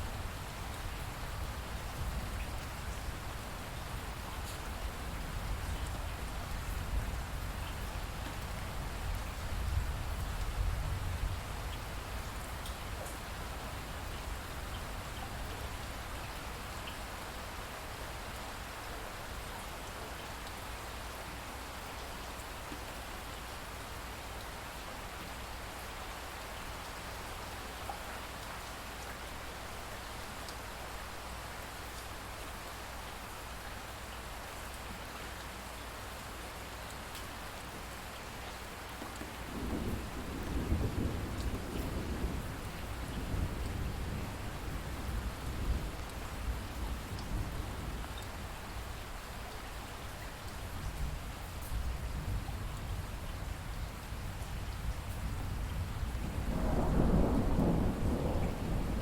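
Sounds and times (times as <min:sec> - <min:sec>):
steady rain: 0:00.0 - 0:59.0
thunder rumble: 0:39.4 - 0:46.0, 0:55.6 - 0:59.0.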